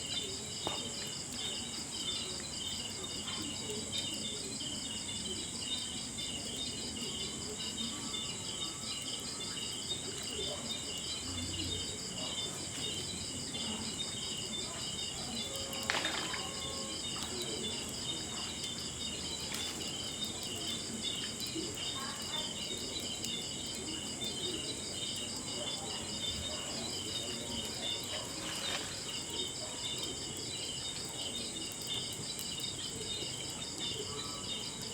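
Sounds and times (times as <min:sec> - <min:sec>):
crickets and night insects: 0:00.0 - 0:34.9
log fire crackling: 0:08.7 - 0:34.0.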